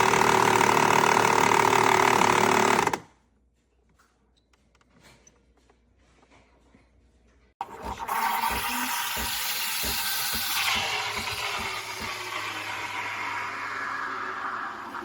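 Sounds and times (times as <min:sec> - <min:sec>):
espresso machine hissing: 0:08.0 - 0:15.0.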